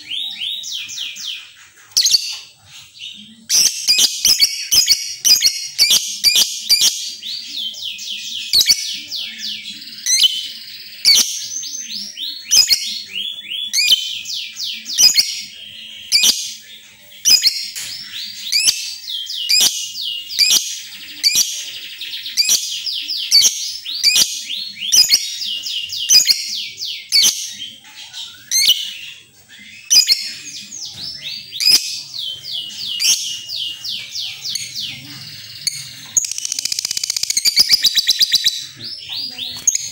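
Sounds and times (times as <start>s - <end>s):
lovebird chattering: 17.2s - 21.6s, 31.5s - 39.9s
sharp bird clicks: 35.6s - 38.5s.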